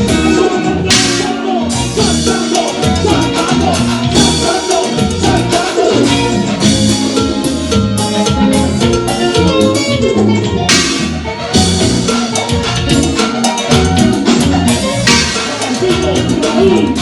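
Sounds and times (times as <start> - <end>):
latin dance band playing: 0.0 - 17.0.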